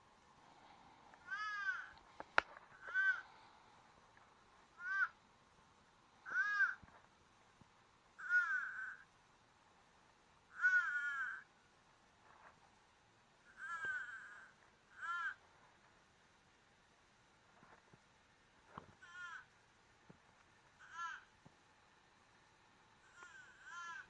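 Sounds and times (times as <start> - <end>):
harsh crow-like caws: 1.2 - 2.1, 2.7 - 3.5, 4.8 - 5.2, 6.2 - 7.0, 8.2 - 9.1, 10.5 - 11.5, 13.4 - 15.5, 19.0 - 19.6, 20.8 - 21.4, 23.0 - 24.0.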